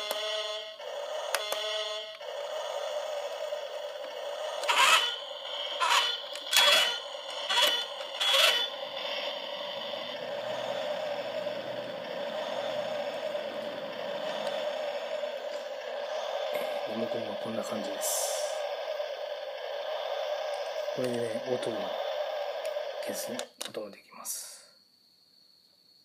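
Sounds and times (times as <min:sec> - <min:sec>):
toy electronic horn honks: 0:00.0 - 0:02.3, 0:04.6 - 0:08.8
steady hum: 0:00.0 - 0:23.6.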